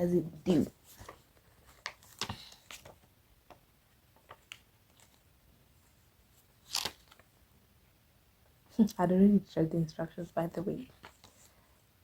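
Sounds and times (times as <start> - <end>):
soft rustle: 0.3 - 7.4, 10.6 - 12.0.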